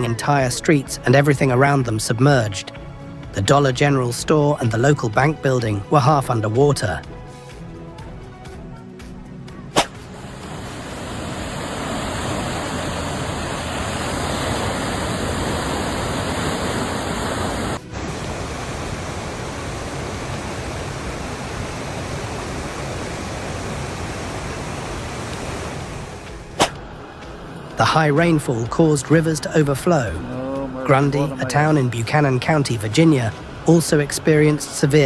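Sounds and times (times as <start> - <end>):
floodwater rushing: 9.8 - 35.0.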